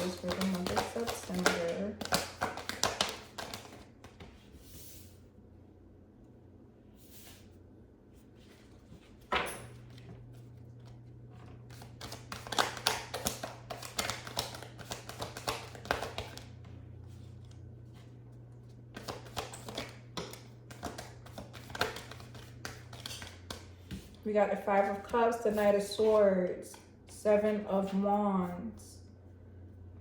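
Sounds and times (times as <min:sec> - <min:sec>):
cards shuffling and flicking: 0:00.0 - 0:04.4, 0:11.7 - 0:16.6, 0:18.9 - 0:24.2
low steady hum: 0:00.0 - 0:30.0.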